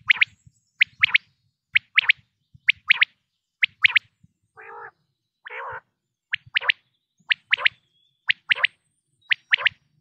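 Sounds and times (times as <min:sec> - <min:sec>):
quail calling: 0:00.0 - 0:00.4, 0:04.6 - 0:08.7, 0:09.3 - 0:09.8.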